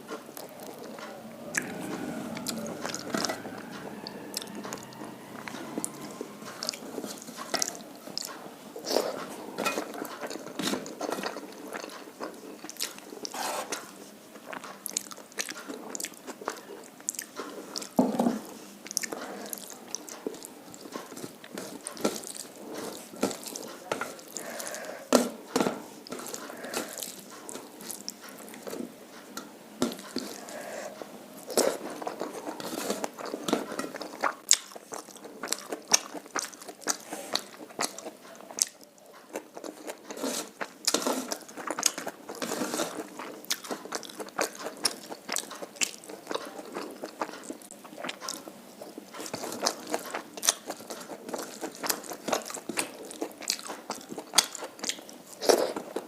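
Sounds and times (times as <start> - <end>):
person chewing and crunching food: 0.0 - 56.0.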